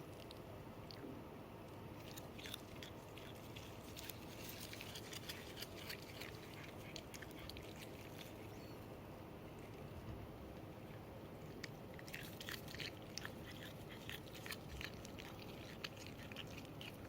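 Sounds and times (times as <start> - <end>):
cat crunching a treat: 2.0 - 8.9, 10.6 - 17.0.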